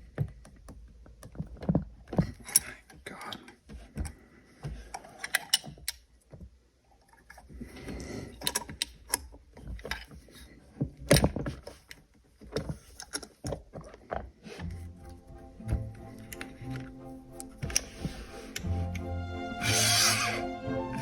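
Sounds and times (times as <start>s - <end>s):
metal lock clicking and scraping: 15.0s - 19.1s.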